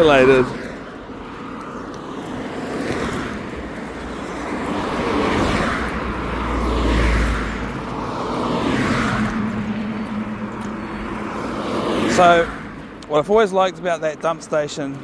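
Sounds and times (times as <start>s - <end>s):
road traffic passing: 0.0s - 15.0s
deep rumble: 6.0s - 12.8s.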